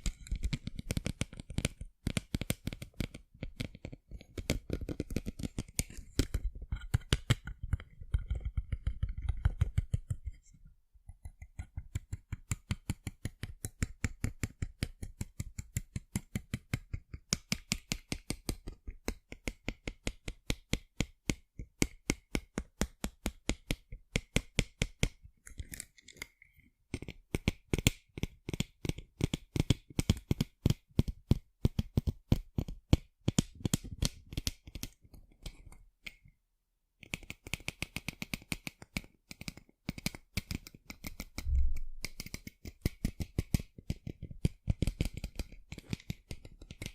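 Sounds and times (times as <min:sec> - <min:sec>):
fingers tapping on sunglasses: 0:37.0 - 0:46.9.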